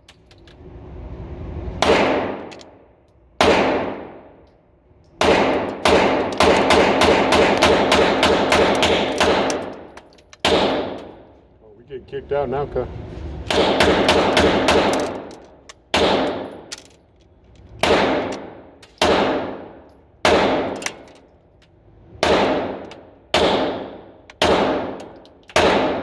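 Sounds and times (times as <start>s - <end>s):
pistol shots with ringing echo: 3.4s - 4.4s, 5.2s - 11.2s, 13.5s - 16.7s, 17.8s - 21.0s, 22.2s - 26.0s.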